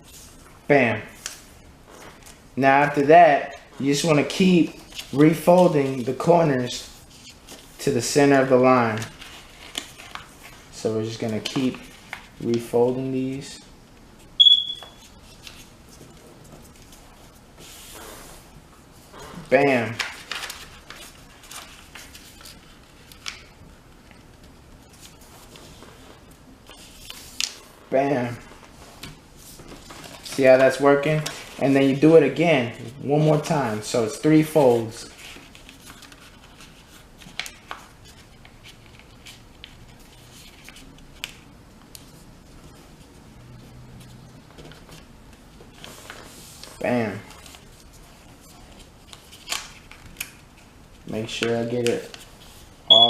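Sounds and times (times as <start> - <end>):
paper being folded and creased: 3.9 - 13.0, 15.0 - 18.4, 19.0 - 27.7, 28.3 - 52.8
paper crackle: 8.9 - 12.8, 15.0 - 18.4, 19.8 - 27.7, 28.4 - 31.8, 35.0 - 52.7.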